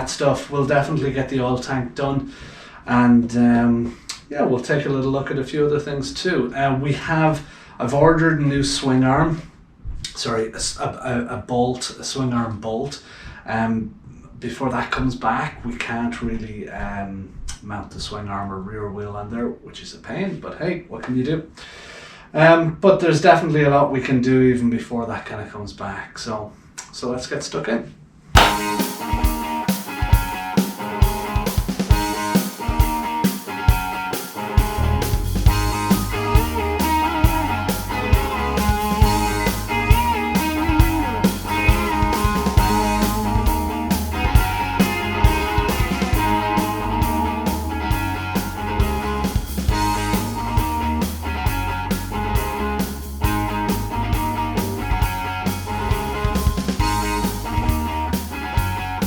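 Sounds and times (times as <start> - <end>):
drum beat: 28.4 - 58.7
rock music with guitar: 28.4 - 59.0
bass line: 34.6 - 59.0.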